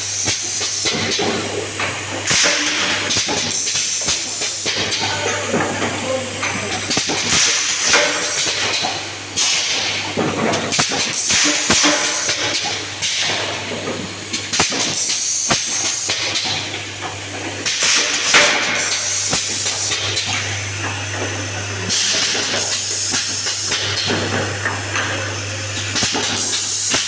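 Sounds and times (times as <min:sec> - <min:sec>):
low machine hum: 0:05.0 - 0:07.2.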